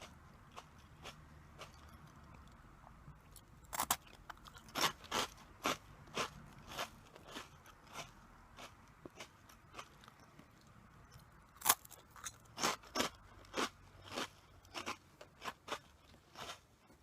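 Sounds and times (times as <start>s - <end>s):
crisp chewing crunches: 0.0s - 2.6s, 3.2s - 17.0s
crunchy snack bite: 3.3s - 10.1s, 11.6s - 16.6s.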